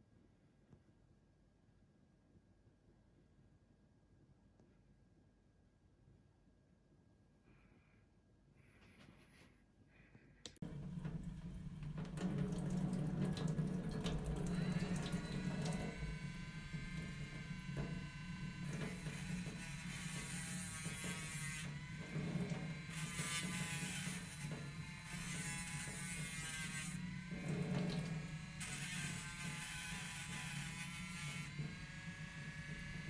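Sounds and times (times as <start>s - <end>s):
small electric motor humming: 14.0s - 33.0s.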